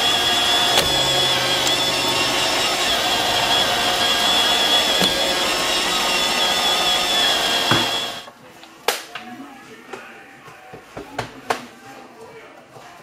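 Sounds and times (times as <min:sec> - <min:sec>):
robot vacuum whirring: 0:00.0 - 0:08.3.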